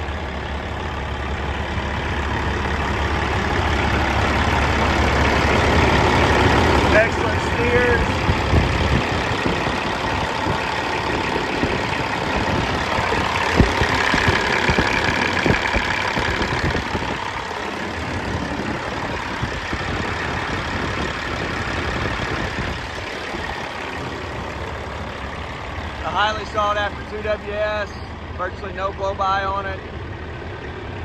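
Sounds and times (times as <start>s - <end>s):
diesel engine idling: 0.0s - 31.0s.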